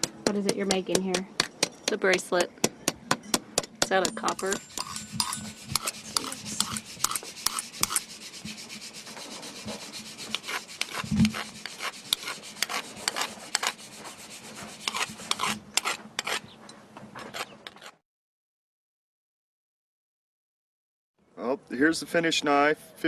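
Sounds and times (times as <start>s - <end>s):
hand tool scraping metal: 3.8s - 18.0s.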